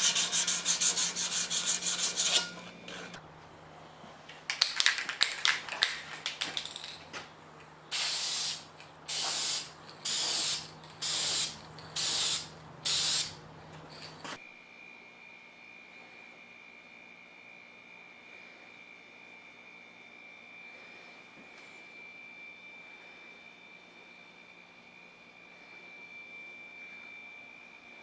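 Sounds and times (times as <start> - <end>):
hand sanding strokes: 0.0 - 3.2
aerosol spray paint bursts: 7.9 - 13.4.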